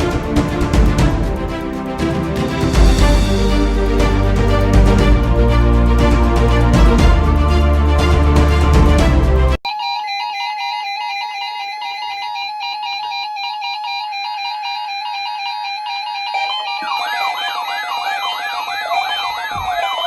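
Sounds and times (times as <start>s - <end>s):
steady beeping tones: 9.7s - 20.0s
warbling siren tone: 9.7s - 20.0s.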